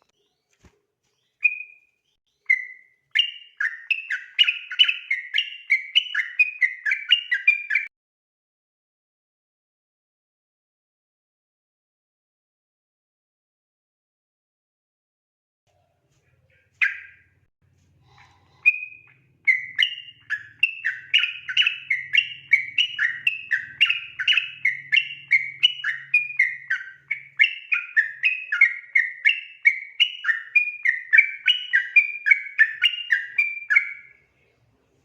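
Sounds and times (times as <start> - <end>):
bird singing whistled notes: 1.2 - 7.9, 16.8 - 17.3, 18.6 - 34.2.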